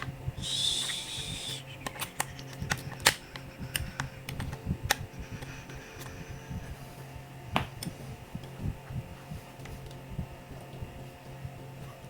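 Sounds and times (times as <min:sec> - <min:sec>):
faint low hum: 0:00.0 - 0:12.0
laptop parts clicking: 0:01.8 - 0:06.2.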